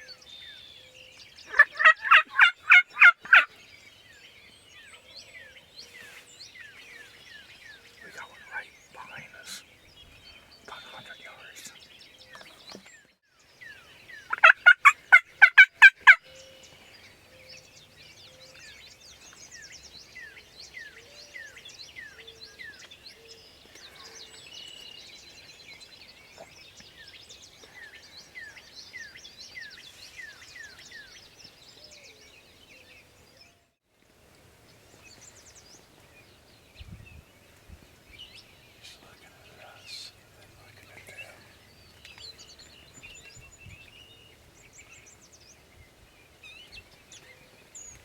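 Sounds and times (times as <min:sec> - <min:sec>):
small birds chirping: 0:00.0 - 0:33.6, 0:34.6 - 0:48.0
turkey gobbling: 0:01.5 - 0:03.5, 0:14.3 - 0:16.2.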